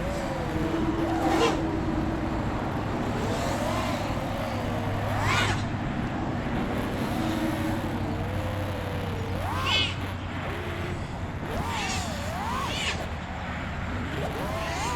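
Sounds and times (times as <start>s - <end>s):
quadcopter motors whining: 0.0s - 14.9s.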